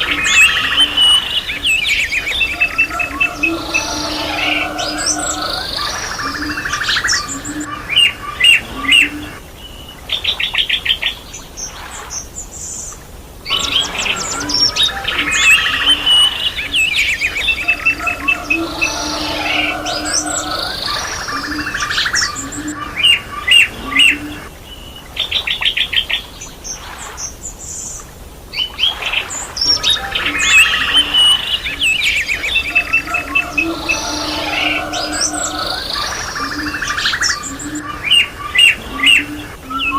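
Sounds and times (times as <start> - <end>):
birds chirping and whistling: 0.0 - 10.8, 13.5 - 24.9, 28.6 - 39.9.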